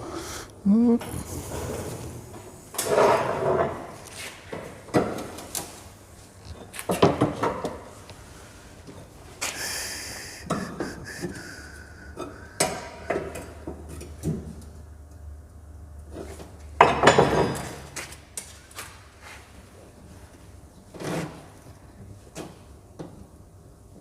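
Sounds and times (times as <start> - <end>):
steady low hum: 7.9 - 16.8.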